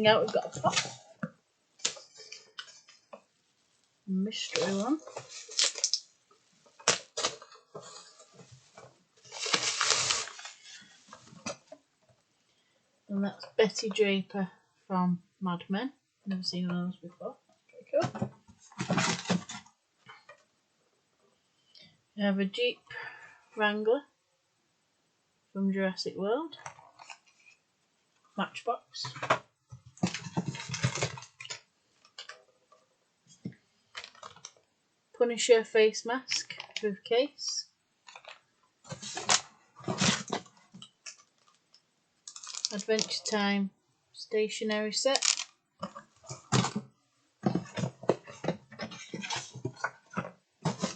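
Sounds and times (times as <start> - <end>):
cardboard and plastic rustling: 0.0 - 3.2, 4.3 - 11.8, 18.0 - 20.4, 29.0 - 32.5, 33.3 - 34.6, 38.1 - 41.7, 42.3 - 43.4, 45.0 - 50.9
packaging crackling: 4.4 - 6.1, 6.8 - 8.1, 9.3 - 10.9, 42.3 - 43.4, 45.1 - 46.0
packaging clicks and knocks: 42.3 - 43.2, 45.2 - 46.8.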